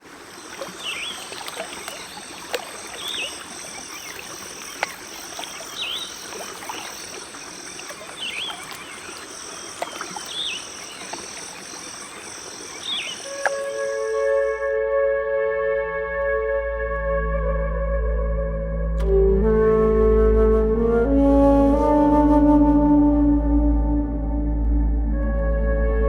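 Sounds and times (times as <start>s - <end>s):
high-pitched insect chorus: 0.0s - 14.8s.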